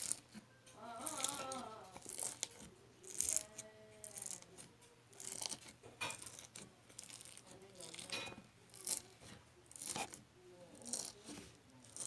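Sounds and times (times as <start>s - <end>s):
small objects clicking and rattling: 1.1s - 4.6s, 5.2s - 9.1s, 10.8s - 11.2s.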